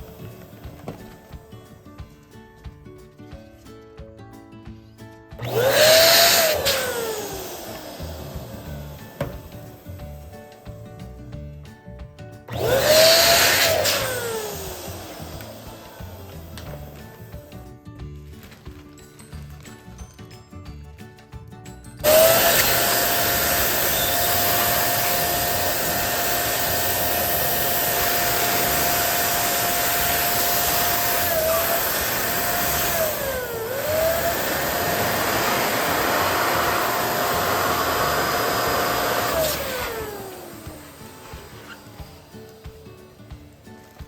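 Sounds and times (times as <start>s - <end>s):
balloon inflator pump running: 0.0s - 2.2s, 5.4s - 10.9s, 12.5s - 17.7s, 22.0s - 44.0s.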